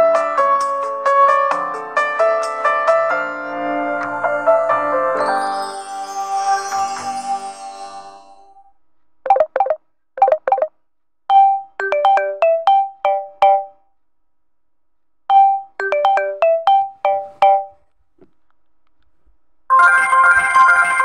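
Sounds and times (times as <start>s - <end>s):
bell-like ringtone melody: 3.8s - 8.6s, 11.3s - 13.8s, 15.3s - 17.8s, 19.7s - 21.0s
brief ringtone snippets: 15.9s - 17.8s.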